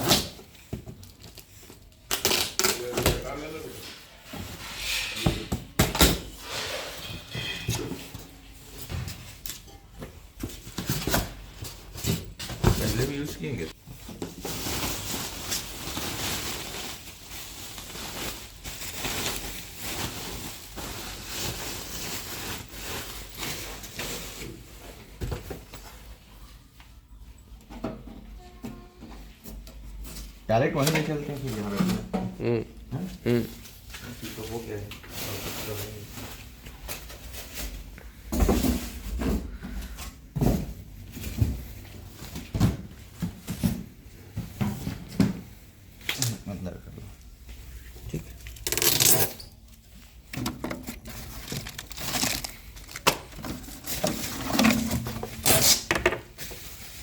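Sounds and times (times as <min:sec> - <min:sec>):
packaging rustling and scraping: 0:10.4 - 0:26.2, 0:33.7 - 0:45.4, 0:47.4 - 0:57.0.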